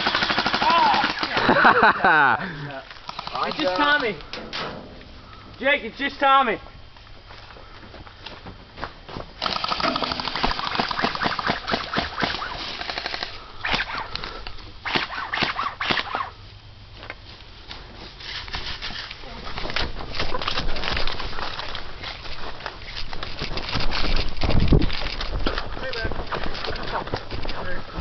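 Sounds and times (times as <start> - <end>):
airsoft guns firing bursts: 0.0 - 1.7, 3.0 - 4.2, 9.4 - 14.1.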